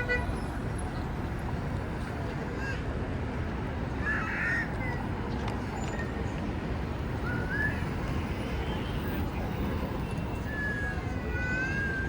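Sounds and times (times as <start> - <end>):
crowd hubbub: 4.7 - 12.0.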